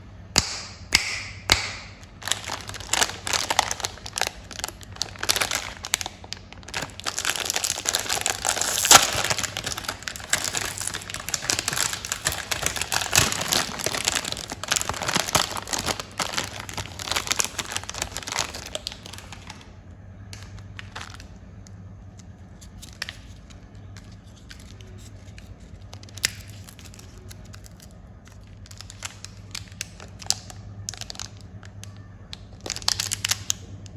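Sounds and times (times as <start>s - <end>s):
wrappers crinkling and tearing: 2.0s - 21.4s, 22.1s - 33.7s.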